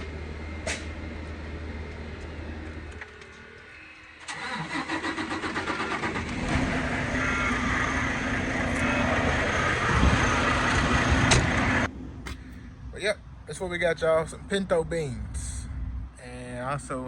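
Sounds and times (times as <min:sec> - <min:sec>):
engine cranking and running: 0:01.8 - 0:11.9.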